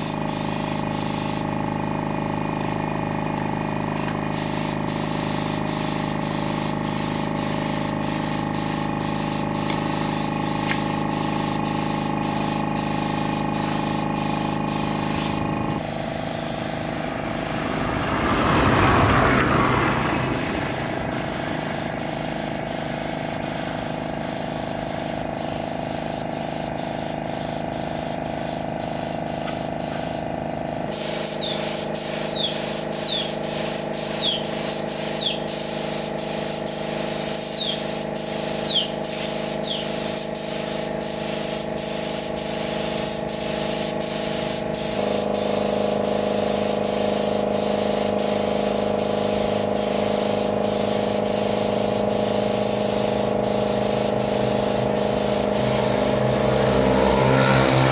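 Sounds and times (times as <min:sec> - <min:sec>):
motor running: 0:00.1 - 0:35.4, 0:44.2 - 0:57.9
high falling chirps: 0:38.6 - 0:40.0.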